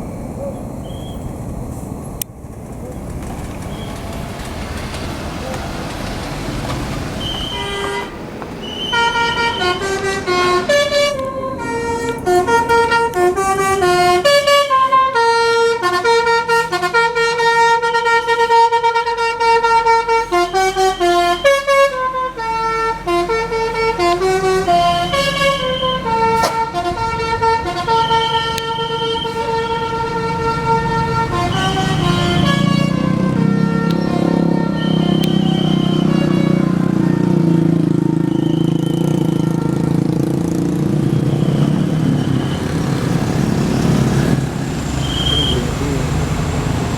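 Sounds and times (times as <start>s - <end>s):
passing vehicle: 0.0s - 46.9s
multi-tone air horn tune: 7.1s - 43.4s.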